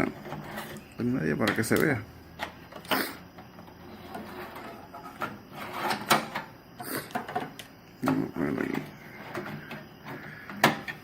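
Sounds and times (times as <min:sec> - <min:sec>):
plastic clicks and knocks: 0:09.3 - 0:11.0.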